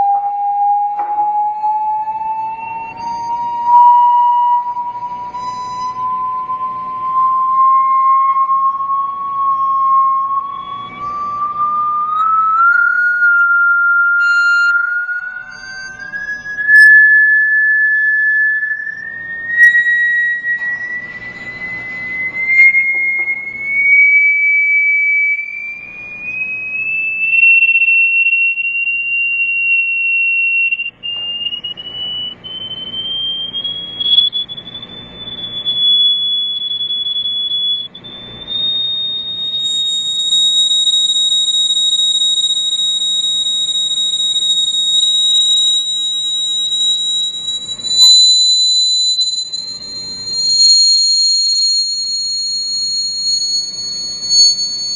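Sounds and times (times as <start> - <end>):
high pure tone rising: 0.0 - 54.9.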